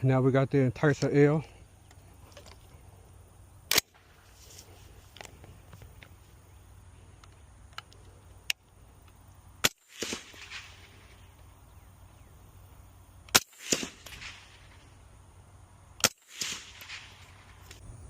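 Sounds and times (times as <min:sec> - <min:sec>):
suppressed rifle shots: 0:03.7 - 0:04.2, 0:09.6 - 0:11.3, 0:13.3 - 0:14.9, 0:16.0 - 0:17.8
gunshot echo: 0:09.6 - 0:11.1, 0:13.3 - 0:14.8, 0:16.0 - 0:17.6.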